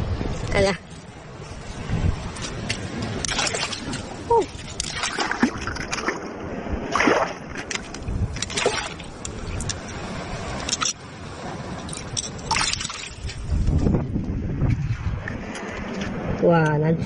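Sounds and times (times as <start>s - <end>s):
shallow water splashing: 1.1s - 13.6s.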